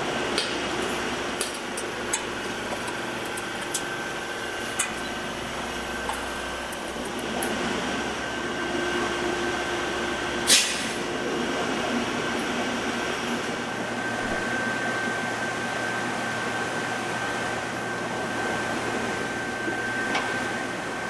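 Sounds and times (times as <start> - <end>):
factory machinery hum: 0.0 - 21.0.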